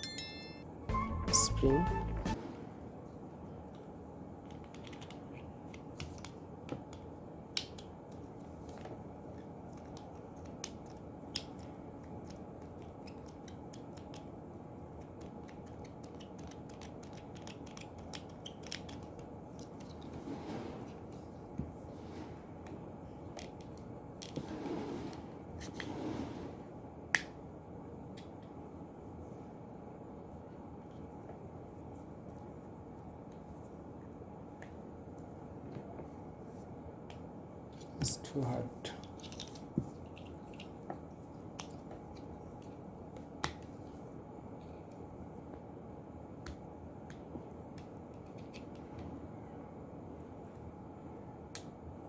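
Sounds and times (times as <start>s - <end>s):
low background noise: 0.0s - 52.0s
clicks of small parts being handled: 39.0s - 40.8s.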